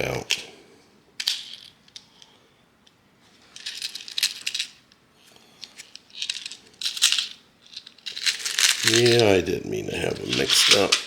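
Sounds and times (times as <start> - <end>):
metal screws clinking: 3.6 - 4.8, 5.6 - 9.2.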